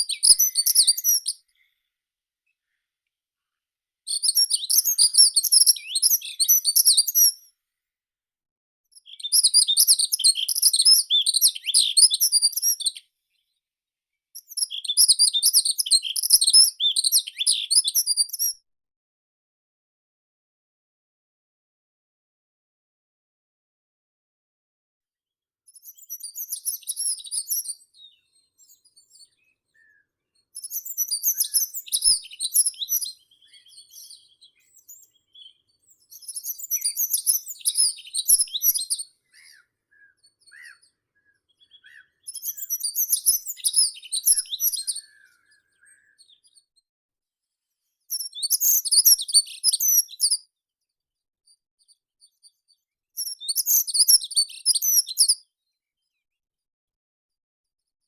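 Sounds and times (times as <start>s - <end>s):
songbird singing high jumbled notes: 0.0s - 1.7s, 4.1s - 7.5s, 8.9s - 13.0s, 14.4s - 18.6s, 25.8s - 46.7s, 48.1s - 50.5s, 53.2s - 55.4s.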